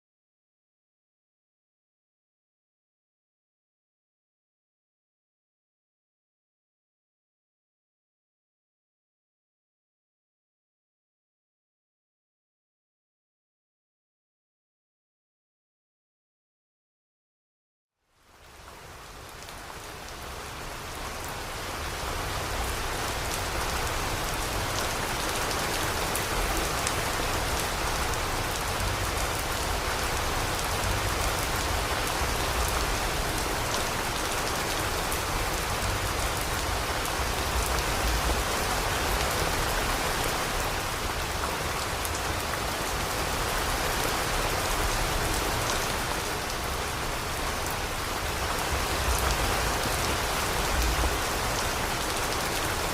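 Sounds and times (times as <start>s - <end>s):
rain pattering on a surface: 18.0s - 52.9s.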